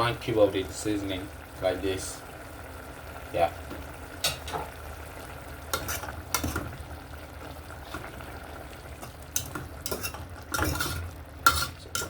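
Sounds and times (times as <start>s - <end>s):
chicken sizzling in a pot: 0.0s - 12.0s
spoon scraping and knocking pot: 5.7s - 6.8s, 9.0s - 12.0s
spoon stirring: 5.7s - 6.8s, 9.0s - 12.0s.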